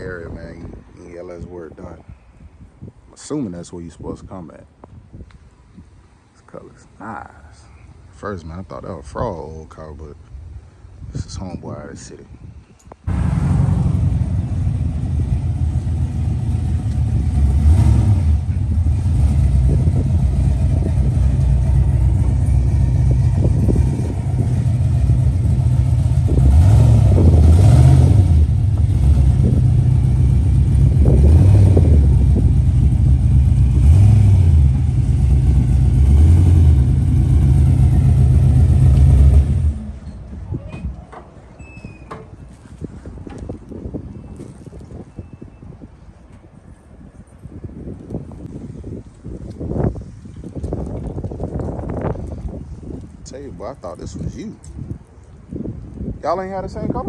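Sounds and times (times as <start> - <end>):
car engine idling and revving: 13.1 - 40.2.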